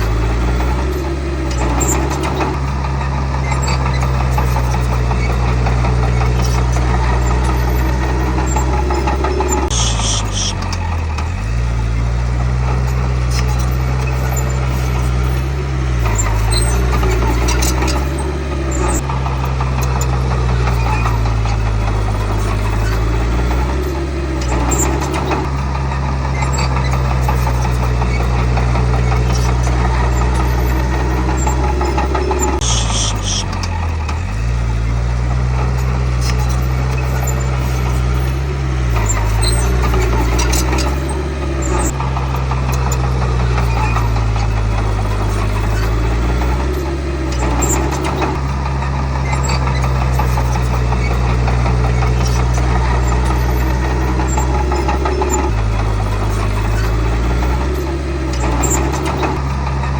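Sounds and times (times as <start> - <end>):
bulldozer diesel engine lugging: 0.0 - 59.9
brief high squeal: 6.5 - 10.6, 30.2 - 33.6.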